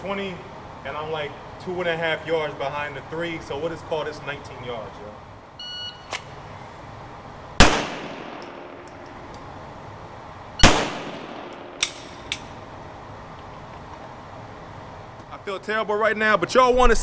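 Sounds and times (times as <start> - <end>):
short electronic beep: 5.6 - 6.1
pistol shots with echo: 7.6 - 9.1, 10.6 - 12.5
light sharp clinks: 8.3 - 9.5, 11.4 - 12.7.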